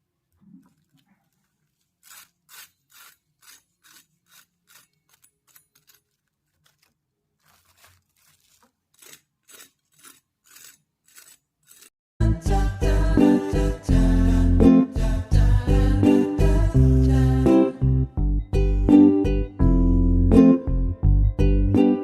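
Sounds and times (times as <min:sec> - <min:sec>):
potato scraping strokes: 0:01.3 - 0:11.9.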